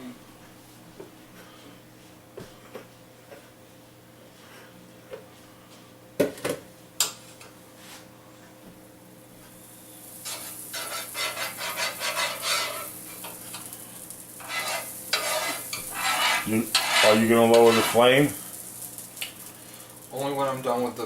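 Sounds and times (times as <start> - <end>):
butter sizzling in frying pan: 9.6 - 21.0
utensil clattering stirring: 10.2 - 13.7, 14.4 - 18.4.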